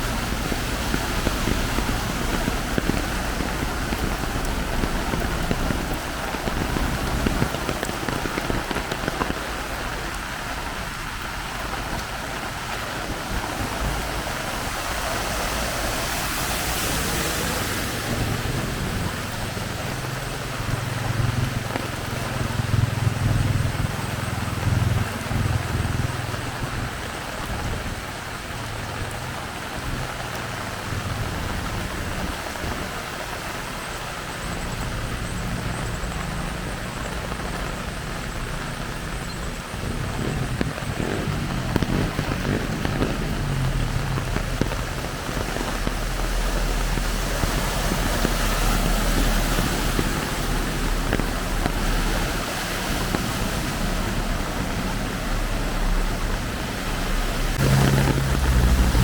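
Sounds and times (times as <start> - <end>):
heavy rain falling: 0.0 - 59.0
low rumble: 38.4 - 59.0.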